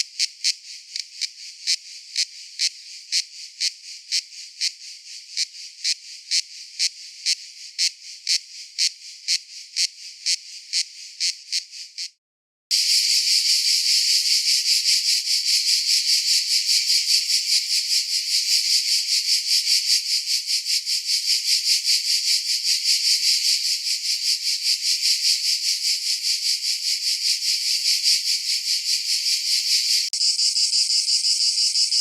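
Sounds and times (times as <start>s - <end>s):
cicadas buzzing: 12.7s - 32.0s.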